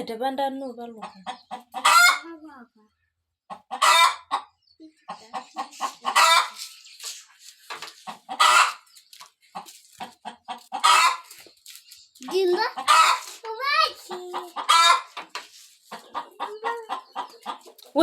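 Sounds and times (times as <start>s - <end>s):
hen cackling and squawking: 1.0s - 2.4s, 3.5s - 7.2s, 7.9s - 11.4s, 12.2s - 17.8s.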